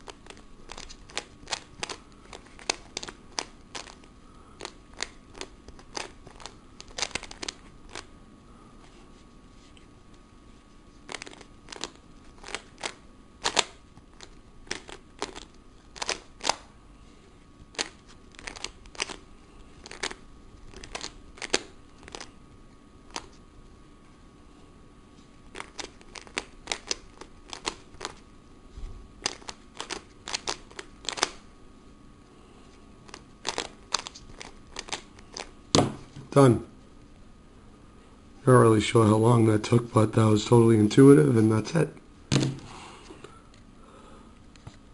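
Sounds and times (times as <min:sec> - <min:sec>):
puzzle cube clicking: 0:00.0 - 0:04.0, 0:04.6 - 0:08.1, 0:11.1 - 0:16.6, 0:17.7 - 0:19.2, 0:19.8 - 0:22.3, 0:25.5 - 0:28.2, 0:29.2 - 0:31.4, 0:33.1 - 0:35.5.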